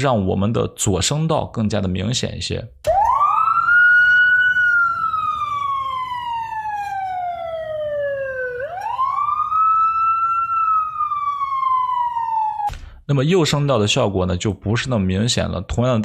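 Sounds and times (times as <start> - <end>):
wailing siren: 2.9 - 12.7.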